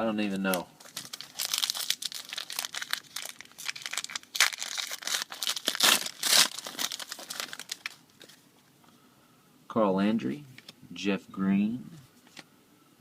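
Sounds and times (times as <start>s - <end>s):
packaging rustling and crinkling: 0.4s - 8.4s.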